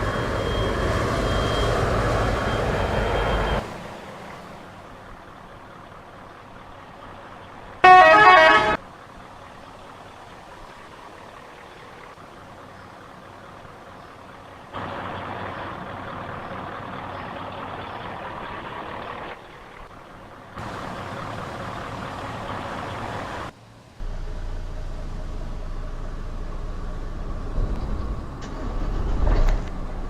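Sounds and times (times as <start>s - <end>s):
bus engine: 0.0s - 30.0s
road traffic noise: 0.0s - 30.0s
low engine idle: 5.0s - 27.8s.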